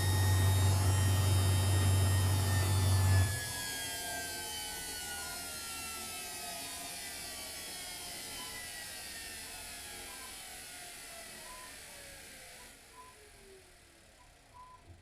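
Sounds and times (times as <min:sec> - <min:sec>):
washing machine hiss: 0:00.0 - 0:03.6
washing machine winding down: 0:00.0 - 0:04.1.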